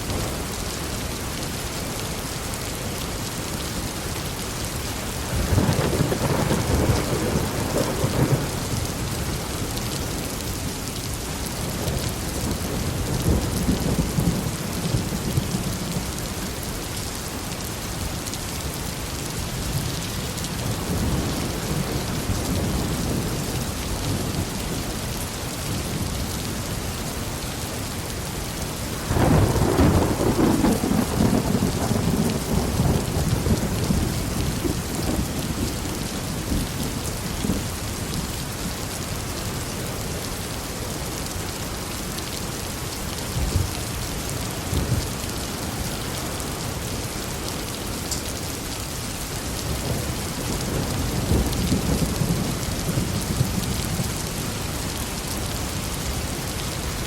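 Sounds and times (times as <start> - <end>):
heavy rain falling: 0.0 - 57.0
thunder rumbling: 5.3 - 10.4, 29.0 - 38.1.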